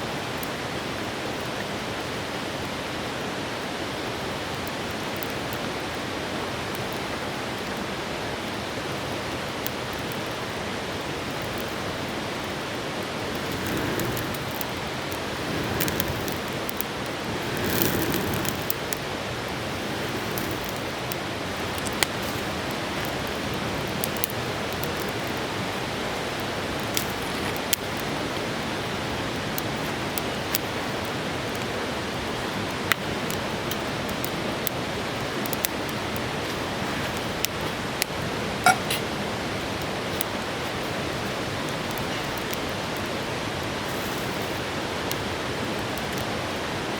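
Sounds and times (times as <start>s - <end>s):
river flowing: 7.4s - 26.8s.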